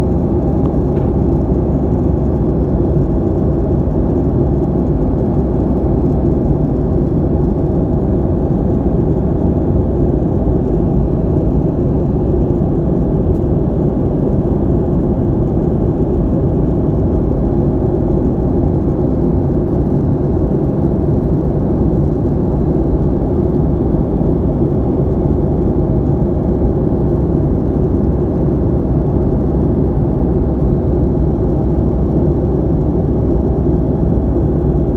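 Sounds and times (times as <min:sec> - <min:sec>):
airplane deep rumble: 0:00.0 - 0:34.9.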